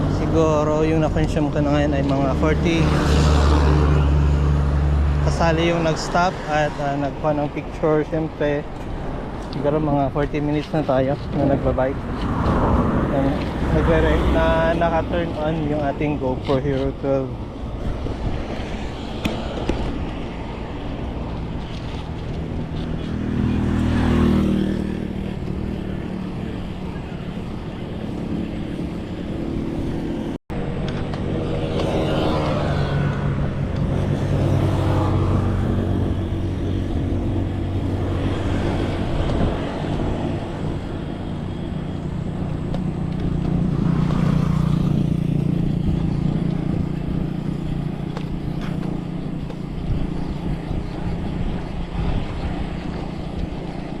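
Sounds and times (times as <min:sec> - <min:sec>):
vehicles passing: 0:00.0 - 0:54.0.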